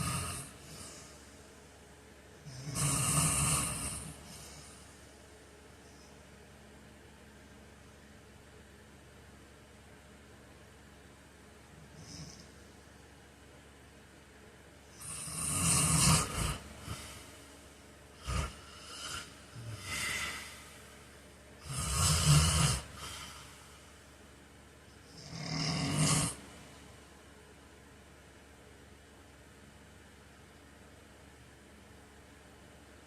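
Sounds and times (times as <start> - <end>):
man snoring: 0.0 - 1.1, 2.4 - 4.9, 11.8 - 12.5, 15.0 - 17.3, 18.2 - 20.8, 21.6 - 23.7, 25.0 - 26.5
quiet breathing: 0.0 - 8.1, 11.6 - 13.2, 14.8 - 25.4.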